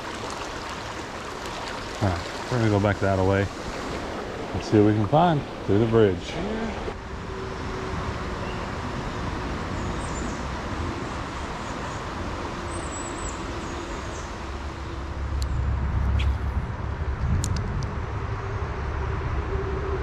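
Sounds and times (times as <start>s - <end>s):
fast-moving creek rushing: 0.0s - 7.0s.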